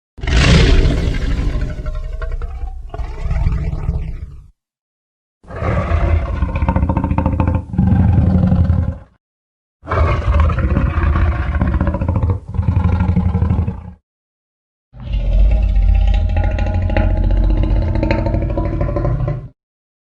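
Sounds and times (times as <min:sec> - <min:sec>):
dinosaur roaring: 0:05.5 - 0:09.2, 0:09.8 - 0:14.0, 0:15.0 - 0:19.6.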